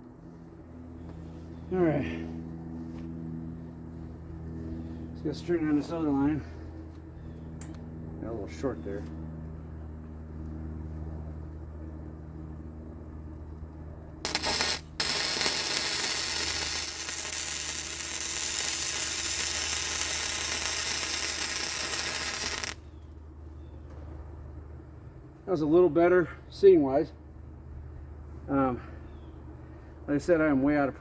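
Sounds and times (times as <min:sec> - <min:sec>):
steady low hum: 0:00.0 - 0:31.0
welder arc crackling and hissing: 0:14.3 - 0:22.8.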